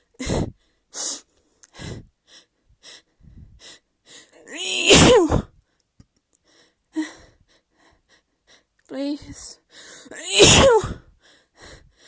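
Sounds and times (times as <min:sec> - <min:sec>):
person breathing: 0:00.0 - 0:04.4, 0:06.4 - 0:08.7, 0:09.6 - 0:10.2, 0:11.0 - 0:12.0
person sneezing: 0:04.6 - 0:05.5, 0:10.2 - 0:11.0.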